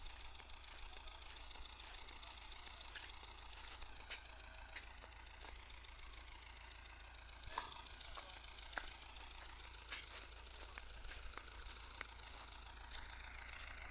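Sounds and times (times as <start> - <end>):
distant tractor rumble: 0.0 - 13.9.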